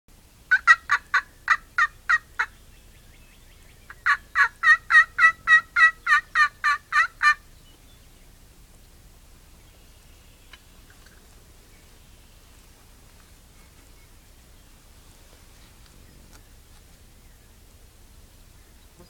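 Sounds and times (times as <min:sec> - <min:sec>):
turkey yelping: 0:00.5 - 0:02.6, 0:03.9 - 0:07.4.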